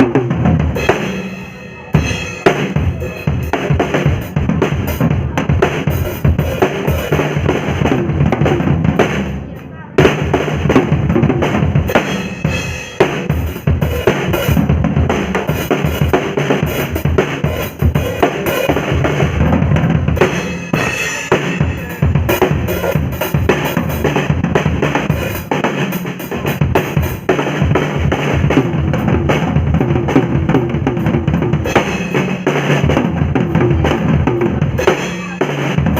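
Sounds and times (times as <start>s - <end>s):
drum kit solo: 0.0s - 35.9s.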